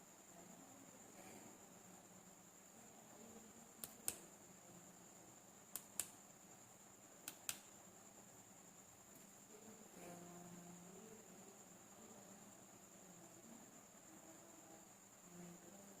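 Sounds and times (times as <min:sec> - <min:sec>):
faint high-pitched whine: 0:00.0 - 0:16.0
sharp clicks: 0:03.8 - 0:04.3, 0:05.7 - 0:06.2, 0:07.2 - 0:07.7.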